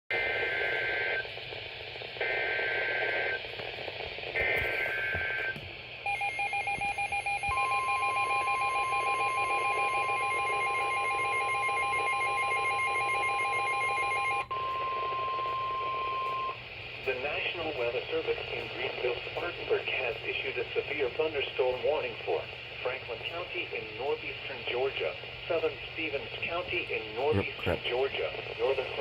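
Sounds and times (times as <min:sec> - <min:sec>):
steady warning alarm tone: 0:04.4 - 0:16.6.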